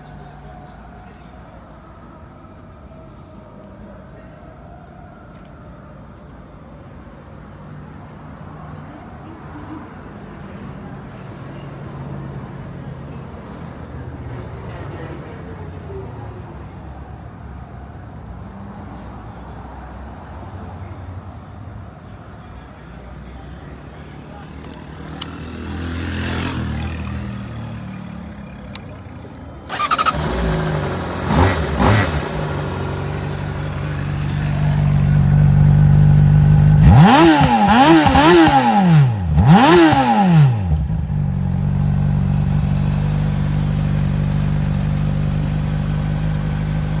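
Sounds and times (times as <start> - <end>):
motorcycle engine idling and revving: 23.8 - 47.0.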